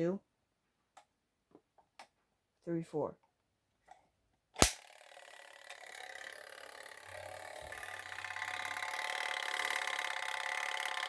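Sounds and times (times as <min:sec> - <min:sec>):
code wheel mechanism whirring: 0:04.6 - 0:11.0.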